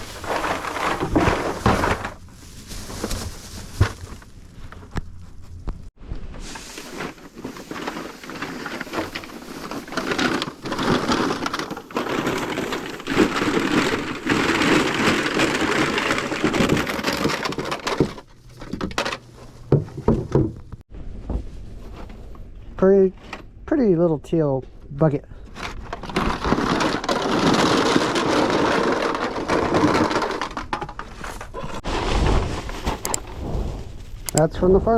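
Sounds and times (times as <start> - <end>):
crushed cans clattering: 0.0 - 2.3, 7.0 - 20.6, 25.5 - 33.2.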